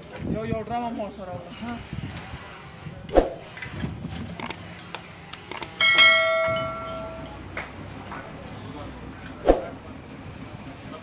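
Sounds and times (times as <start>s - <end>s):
metallic knocks and clicks: 4.3s - 4.6s
heavy strike on steel ringing: 5.8s - 7.3s.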